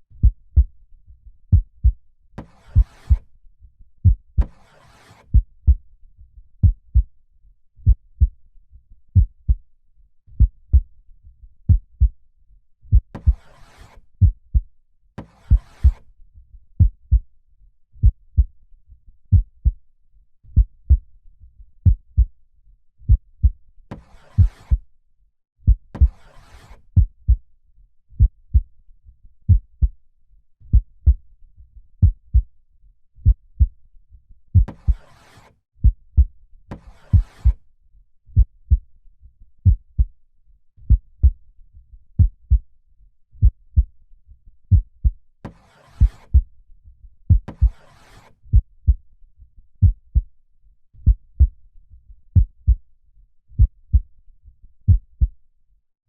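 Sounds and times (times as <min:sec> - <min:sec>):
slow heartbeat: 0:00.2 - 0:00.8, 0:01.5 - 0:02.0, 0:02.7 - 0:03.3, 0:04.0 - 0:04.5, 0:06.6 - 0:07.1, 0:07.8 - 0:08.4, 0:09.2 - 0:09.6, 0:10.3 - 0:10.9, 0:12.9 - 0:13.4, 0:14.2 - 0:14.7, 0:15.4 - 0:16.0, 0:16.7 - 0:17.2, 0:18.0 - 0:18.5, 0:19.3 - 0:19.8, 0:20.6 - 0:21.0, 0:21.8 - 0:22.3, 0:23.1 - 0:23.6, 0:24.3 - 0:24.8, 0:25.7 - 0:26.2, 0:28.2 - 0:28.7, 0:29.5 - 0:30.0, 0:30.7 - 0:31.2, 0:32.0 - 0:32.5, 0:33.2 - 0:33.8, 0:34.6 - 0:35.0, 0:35.8 - 0:36.3, 0:38.4 - 0:38.9, 0:39.6 - 0:40.1, 0:40.9 - 0:41.4, 0:42.2 - 0:42.6, 0:43.4 - 0:43.9, 0:45.9 - 0:46.5, 0:47.3 - 0:47.8, 0:48.5 - 0:49.0, 0:49.8 - 0:50.3, 0:51.0 - 0:51.6, 0:52.4 - 0:52.8, 0:53.6 - 0:54.1, 0:54.8 - 0:55.4.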